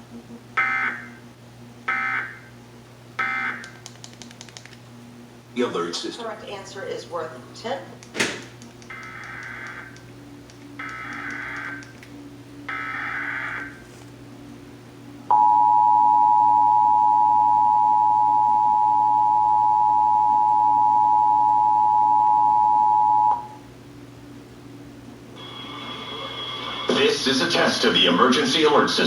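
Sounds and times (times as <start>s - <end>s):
shrill two-tone attention signal: 15.3s - 23.6s.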